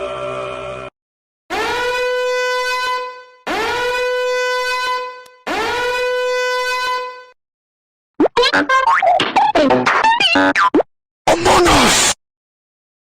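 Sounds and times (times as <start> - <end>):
horn blasts rising in pitch: 1.5 - 7.4.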